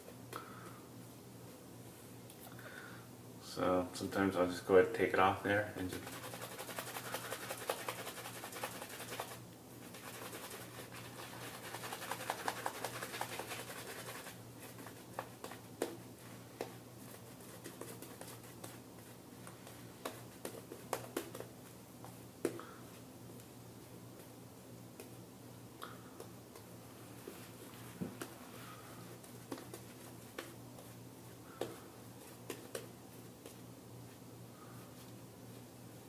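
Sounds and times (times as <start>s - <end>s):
shaving brush swishing lather: 5.9s - 15.2s.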